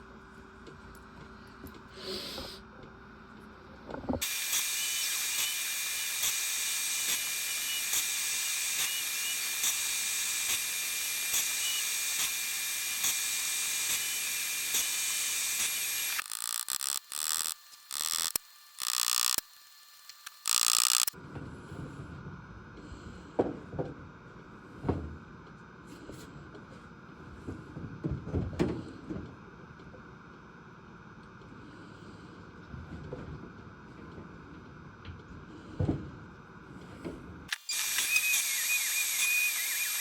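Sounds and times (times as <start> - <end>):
high-speed power tool whine: 4.2 - 21.2, 37.5 - 40.0.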